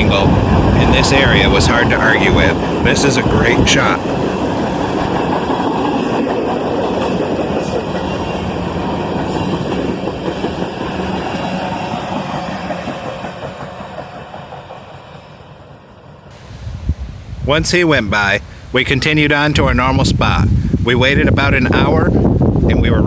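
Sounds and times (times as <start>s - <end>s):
freight train wheels clattering on rails: 0.0s - 15.8s.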